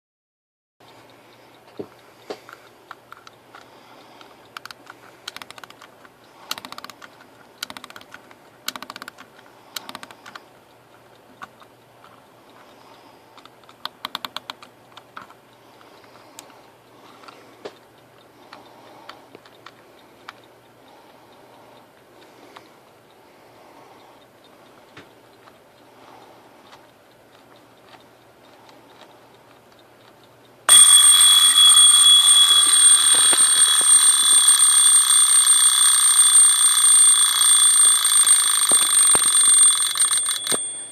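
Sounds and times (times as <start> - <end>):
alarm clock mechanical clicks: 3.0 - 15.2, 24.0 - 40.9.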